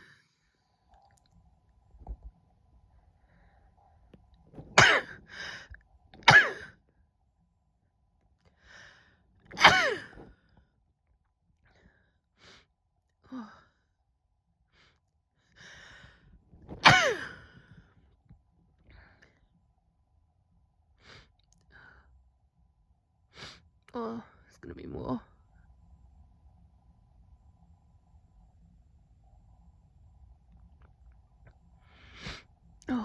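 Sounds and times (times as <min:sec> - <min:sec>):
woman sneezing: 0:04.8 - 0:05.1, 0:06.3 - 0:06.7, 0:09.6 - 0:10.2, 0:16.8 - 0:17.4.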